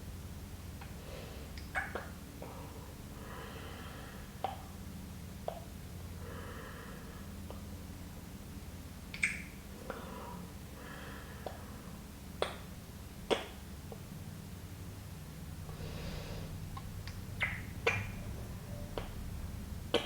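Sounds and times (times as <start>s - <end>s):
steady low hum: 0.0s - 20.0s
slow breaths: 2.4s - 4.4s, 9.8s - 12.0s, 15.7s - 16.7s.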